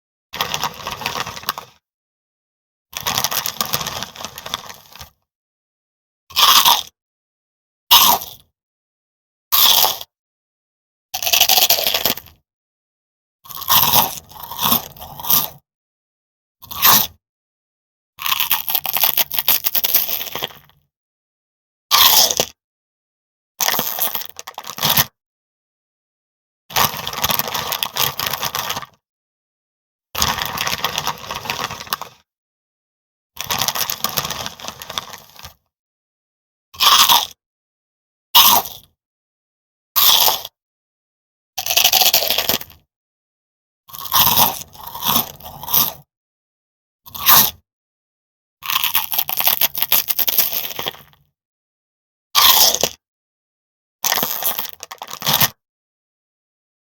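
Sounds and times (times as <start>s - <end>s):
potato chips crackling and crunching: 0.4s - 1.8s, 3.0s - 5.1s, 6.4s - 6.9s, 9.6s - 9.9s, 11.2s - 12.2s, 18.2s - 20.6s, 23.6s - 25.0s, 26.8s - 29.0s, 30.2s - 32.2s, 33.4s - 35.6s, 36.8s - 37.3s, 40.0s - 40.5s, 41.6s - 42.8s, 43.9s - 46.0s, 48.6s - 51.1s, 54.1s - 55.5s.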